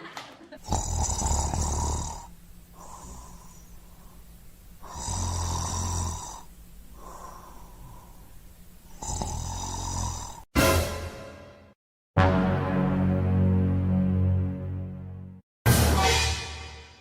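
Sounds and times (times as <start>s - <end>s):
loud rasping snores: 0.6s - 3.7s, 4.8s - 7.6s, 8.9s - 10.5s
quiet breath out: 1.6s - 5.1s, 6.9s - 8.5s.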